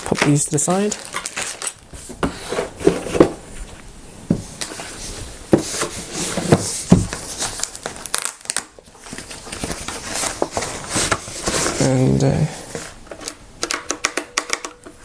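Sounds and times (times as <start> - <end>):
packaging crinkling and rustling: 0.0 - 13.9
box knocks and thuds: 6.4 - 7.2.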